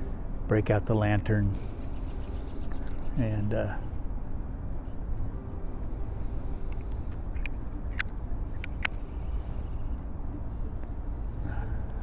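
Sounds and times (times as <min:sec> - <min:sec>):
low outdoor rumble: 0:00.0 - 0:12.0
light sharp clicks: 0:06.7 - 0:09.1.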